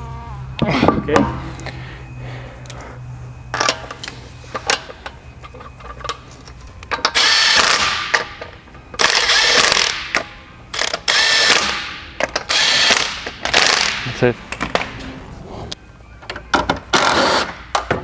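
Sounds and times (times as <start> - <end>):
power ratchet tool running: 9.0 - 10.0, 10.8 - 11.8.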